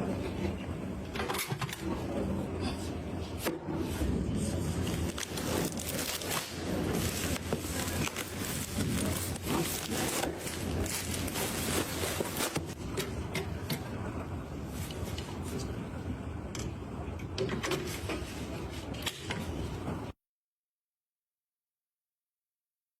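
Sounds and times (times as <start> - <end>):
hard objects rubbing and scraping: 4.0 - 12.8.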